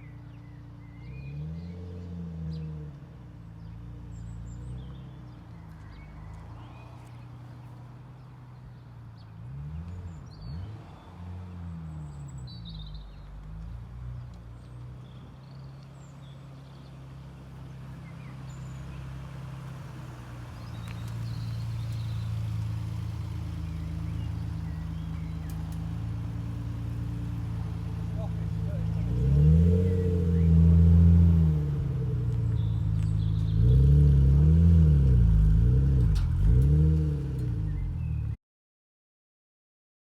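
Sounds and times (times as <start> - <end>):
car engine idling: 19.5 - 37.9
birds chirping: 20.6 - 34.4.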